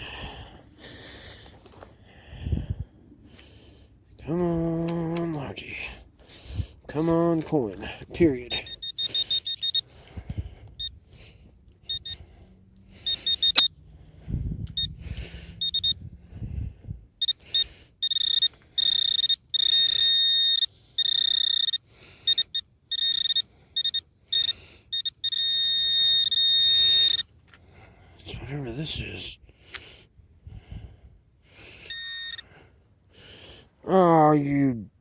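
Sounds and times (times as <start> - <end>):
pinpointer probe beeping: 8.5 - 10.0, 10.7 - 11.0, 11.9 - 12.2, 13.0 - 13.8, 14.7 - 15.0, 15.6 - 16.0, 17.2 - 27.3, 31.9 - 32.5.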